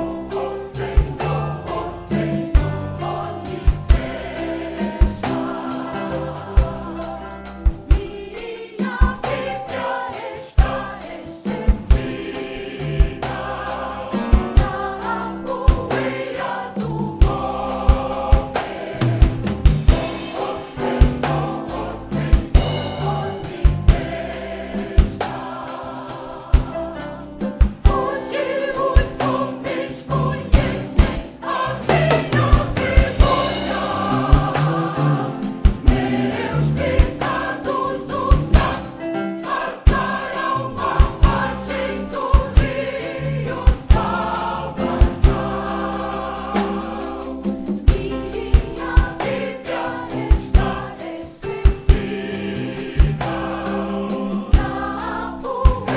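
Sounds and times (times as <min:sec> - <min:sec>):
choir singing gospel: 0:00.0 - 0:55.9
steady drum beat: 0:00.0 - 0:55.9
band accompaniment: 0:10.6 - 0:25.9, 0:26.5 - 0:55.9.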